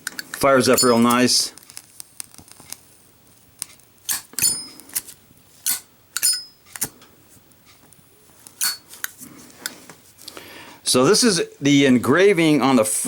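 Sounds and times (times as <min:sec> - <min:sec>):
high metallic clink: 0:00.0 - 0:01.3, 0:04.1 - 0:06.9, 0:08.6 - 0:09.0
lighter lid clicking: 0:04.1 - 0:05.1, 0:05.7 - 0:06.9.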